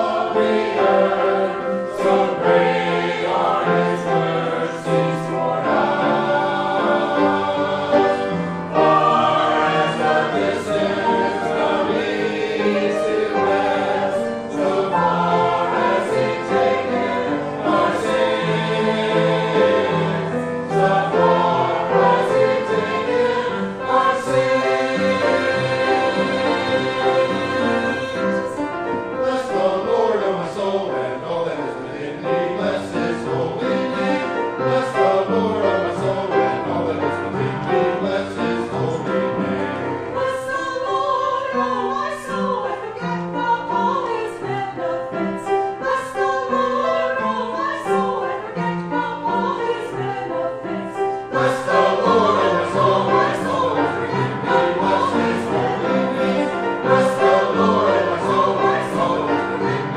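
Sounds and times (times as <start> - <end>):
instrumental accompaniment: 0.0 - 31.2
choir singing a hymn: 0.0 - 59.9.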